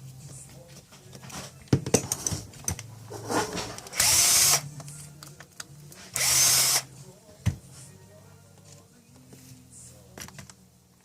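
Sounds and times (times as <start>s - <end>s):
cordless drill bursts: 3.9s - 4.6s, 6.2s - 6.9s.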